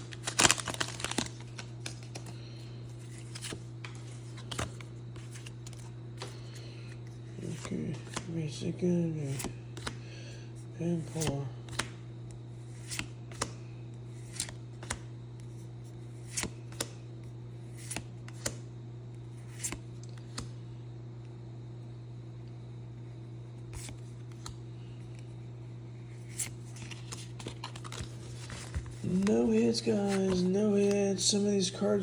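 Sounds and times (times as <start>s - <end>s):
cards flipped through by hand: 0.0s - 8.6s, 9.2s - 10.0s, 10.9s - 12.0s, 12.6s - 18.6s, 19.3s - 20.6s, 23.6s - 25.3s, 26.1s - 31.7s
steady low hum: 0.0s - 32.0s.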